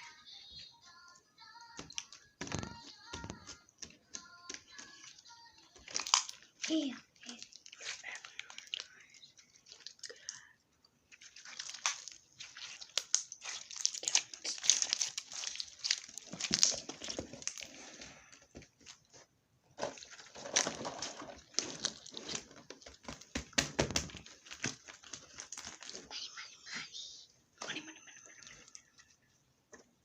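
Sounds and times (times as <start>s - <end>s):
slime squished by hand: 1.7s - 10.3s, 11.1s - 18.0s.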